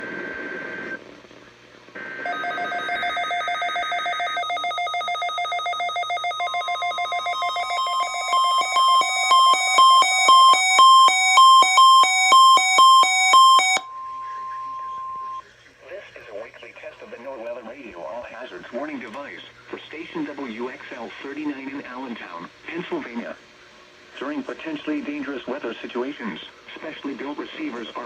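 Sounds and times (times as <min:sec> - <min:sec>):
static-laden data tones: 0:02.0 - 0:23.4
alternating electronic beeping: 0:02.3 - 0:15.4
steady high tone: 0:02.3 - 0:15.4.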